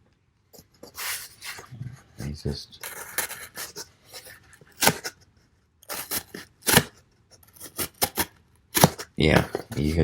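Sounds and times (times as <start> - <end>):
knife cutting cardboard: 0.8 - 1.7, 2.8 - 5.2, 5.8 - 10.0.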